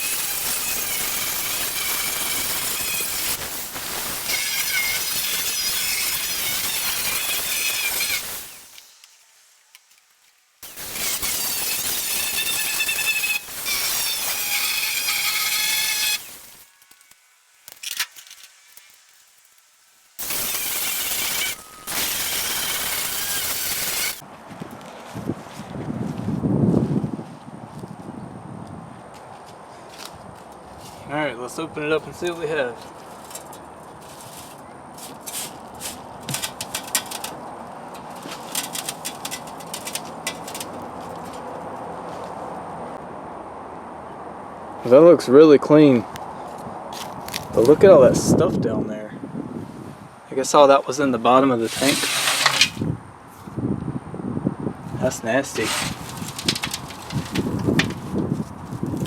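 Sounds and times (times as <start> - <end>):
power tool cutting steel: 0.0 - 8.9, 10.6 - 17.2, 20.2 - 24.2, 51.6 - 52.8, 55.5 - 57.9
sharp metal clicks and scrapes: 9.8 - 24.2, 33.2 - 41.4, 51.6 - 52.8, 55.5 - 58.0.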